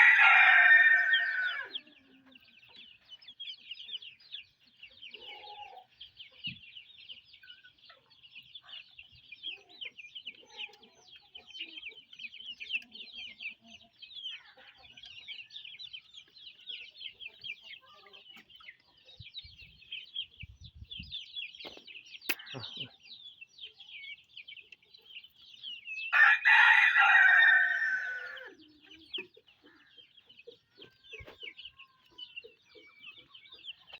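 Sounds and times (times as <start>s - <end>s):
rooster crow: 0.0s - 1.9s, 26.1s - 28.6s
chicken clucks: 0.0s - 33.9s
chicks peeping: 0.0s - 33.9s.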